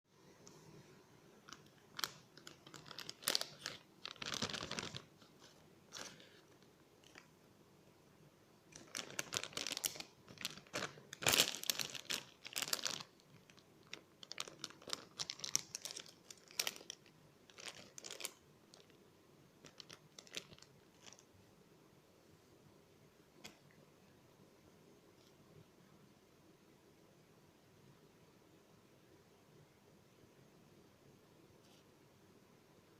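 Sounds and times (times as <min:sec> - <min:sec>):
toys crinkling and rustling: 0:01.5 - 0:07.3, 0:08.7 - 0:19.0.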